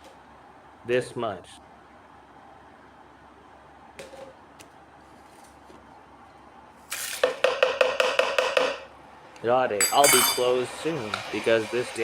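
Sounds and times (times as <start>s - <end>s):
measuring spoon clinking container: 9.8s - 10.6s.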